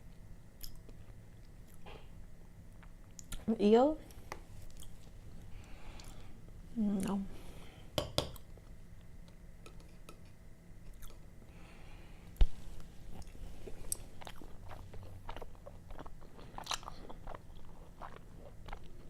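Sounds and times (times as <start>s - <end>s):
close chewing and mouth clicks: 4.1s - 6.2s, 10.9s - 11.3s, 13.1s - 19.0s.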